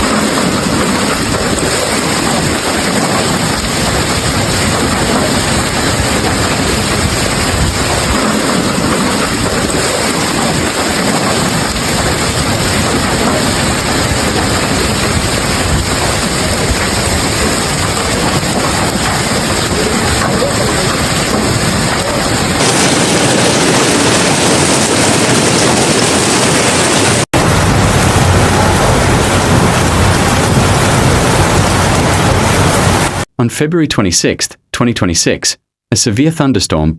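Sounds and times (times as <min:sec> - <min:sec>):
heavy rain pouring: 0:00.0 - 0:33.3.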